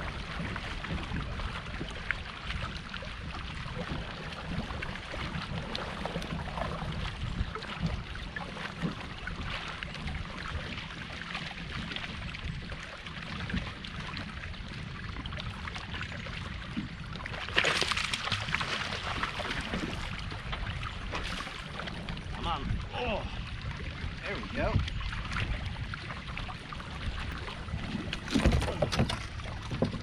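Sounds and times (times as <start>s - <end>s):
water lapping against boat hull: 0.0s - 30.0s
water splashing: 0.1s - 30.0s
steady low rumble: 13.8s - 30.0s.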